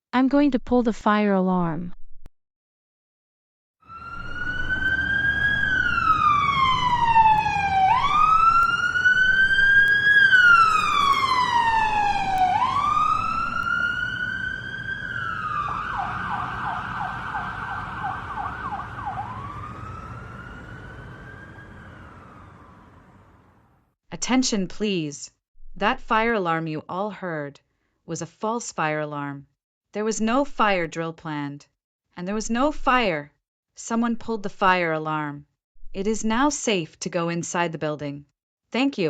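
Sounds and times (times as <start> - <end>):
electronic emergency siren wailing: 3.8 - 23.8.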